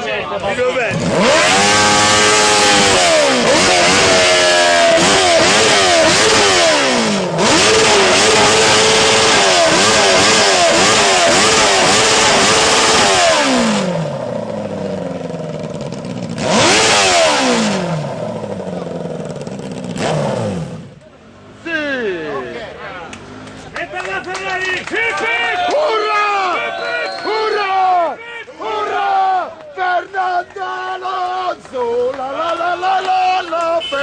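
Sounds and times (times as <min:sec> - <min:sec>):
motorcycle engine revving: 0:00.0 - 0:21.5
motorcycle engine idling: 0:13.8 - 0:16.9, 0:17.7 - 0:20.0.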